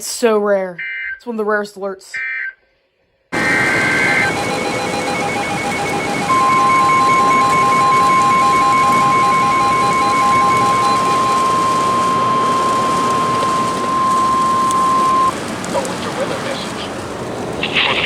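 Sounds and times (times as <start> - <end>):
warbling alert data tones: 3.4 - 15.3
faint rapid beeping: 3.4 - 16.8
steady warning alarm tone: 3.4 - 16.9
radio static hiss: 3.4 - 18.0.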